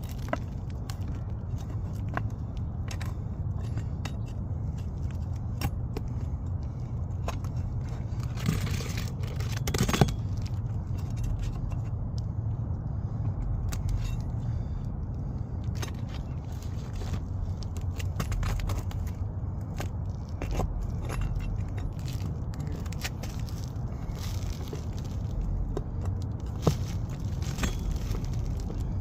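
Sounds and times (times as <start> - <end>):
steady low rumble: 0.0 - 29.0
shingle scraping: 13.0 - 29.0.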